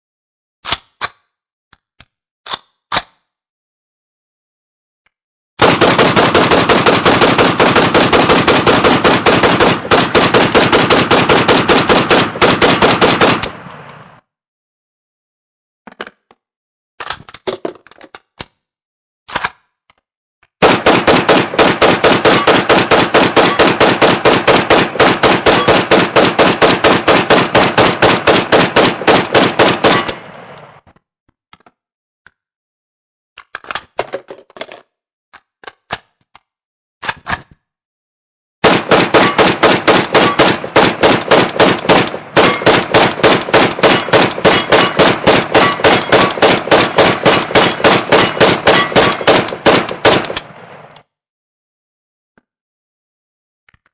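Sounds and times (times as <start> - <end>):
rifle automatic fire: 5.6 - 14.2, 20.6 - 30.8, 38.6 - 50.9
metallic reloading clicks: 29.0 - 30.7, 39.2 - 50.6.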